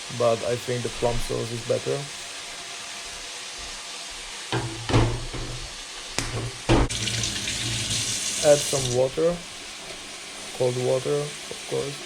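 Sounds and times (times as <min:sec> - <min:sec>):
food sizzling in a pan: 0:00.0 - 0:12.0
water running from a tap: 0:04.5 - 0:12.0.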